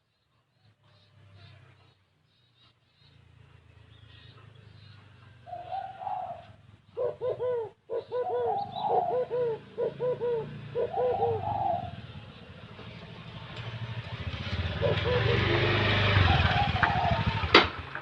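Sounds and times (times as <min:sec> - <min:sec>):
dove cooing: 0:04.9 - 0:12.7, 0:14.2 - 0:17.5.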